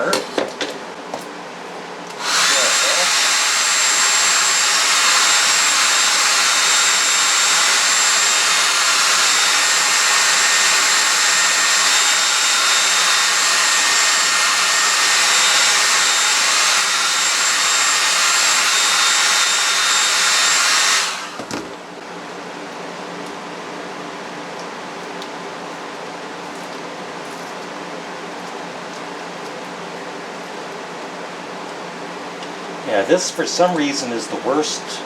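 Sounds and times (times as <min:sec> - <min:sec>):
hair dryer blowing: 0:02.1 - 0:21.8.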